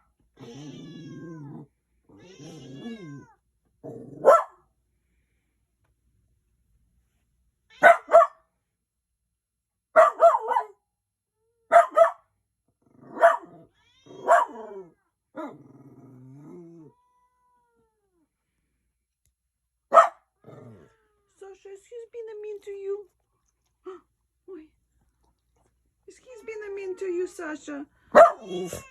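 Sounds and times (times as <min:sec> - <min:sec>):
dog growling: 0:00.4 - 0:04.3, 0:12.8 - 0:17.0, 0:20.4 - 0:21.0
dog barking: 0:04.2 - 0:04.6, 0:07.8 - 0:08.4, 0:10.0 - 0:10.8, 0:11.7 - 0:12.3, 0:13.1 - 0:13.6, 0:14.2 - 0:14.8, 0:19.9 - 0:20.3, 0:28.1 - 0:28.8.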